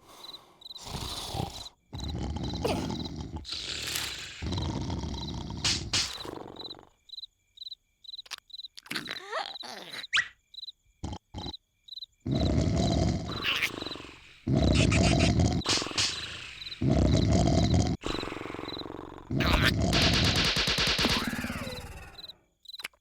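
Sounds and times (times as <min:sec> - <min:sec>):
cartoon snoring: 0:00.0 - 0:06.9, 0:11.0 - 0:11.6, 0:12.3 - 0:22.4
cricket chirping: 0:00.0 - 0:23.0.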